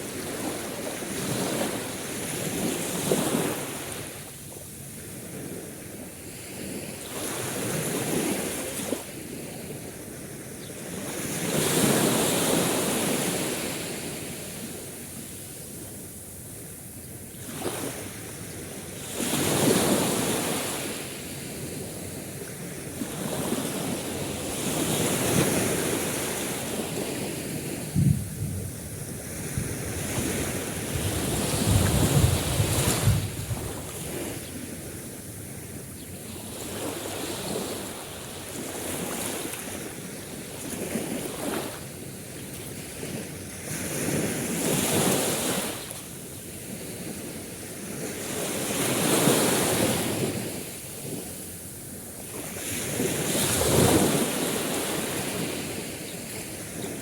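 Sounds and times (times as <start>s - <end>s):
sea waves washing onto shore: 17.4s - 57.0s
wind buffeting microphone: 27.0s - 35.0s.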